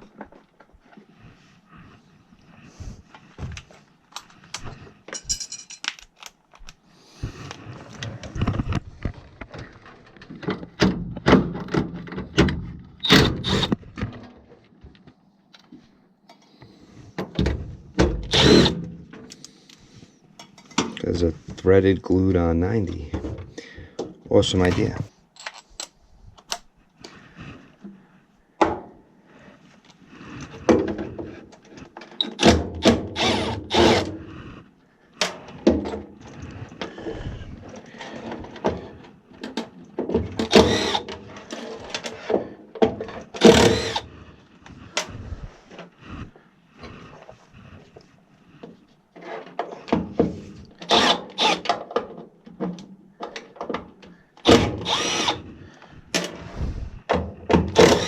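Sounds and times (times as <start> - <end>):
tools and parts clattering: 3.5 - 6.7, 24.8 - 26.6
power driver bursts: 13.0 - 13.8, 18.3 - 18.8, 32.8 - 34.1, 40.5 - 41.1, 43.4 - 44.1, 50.9 - 51.6, 54.5 - 55.4, 57.8 - 58.0.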